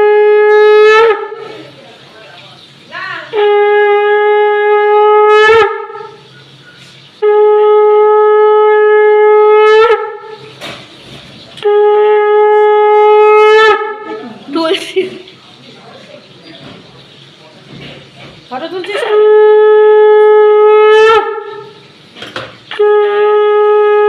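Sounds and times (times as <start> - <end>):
conch shell blasts: 0.0 - 1.5, 3.3 - 6.3, 7.2 - 10.6, 11.6 - 14.2, 19.0 - 21.8, 22.7 - 24.0.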